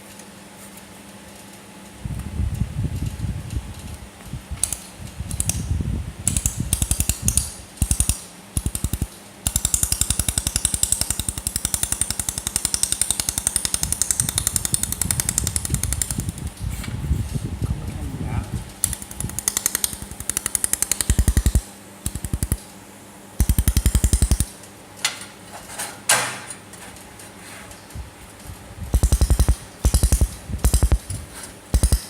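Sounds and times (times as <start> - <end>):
low machine hum: 0.0 - 32.0
laser welder pulses ticking: 6.2 - 16.4, 18.8 - 22.6, 23.4 - 24.5, 28.9 - 32.0.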